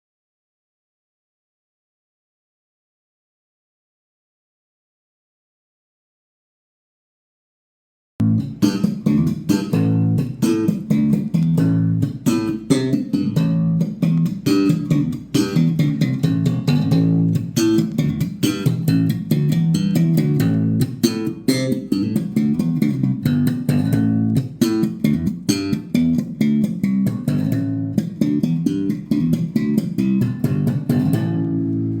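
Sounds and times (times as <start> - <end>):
bass line: 8.2 - 32.0
plucked guitar notes: 8.2 - 32.0.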